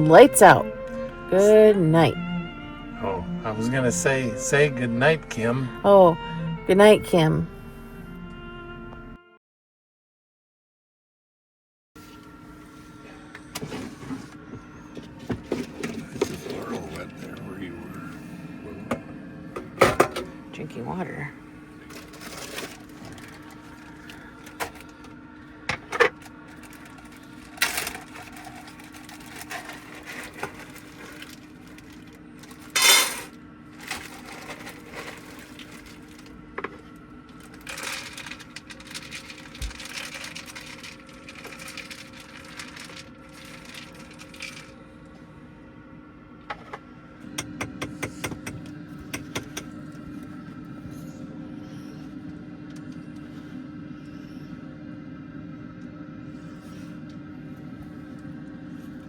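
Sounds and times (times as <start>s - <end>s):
steady low hum: 0.0s - 9.2s, 12.0s - 59.0s
clicks and rattles of objects: 25.7s - 36.7s, 37.4s - 44.8s.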